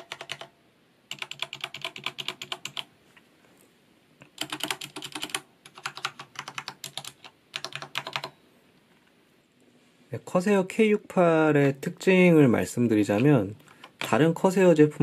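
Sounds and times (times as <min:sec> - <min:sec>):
mechanical keyboard typing: 0:00.0 - 0:02.9, 0:04.2 - 0:08.4, 0:13.0 - 0:14.4.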